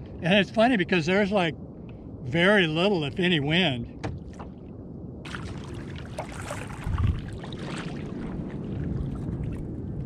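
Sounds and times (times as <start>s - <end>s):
water lapping against kayak hull: 4.0s - 10.0s.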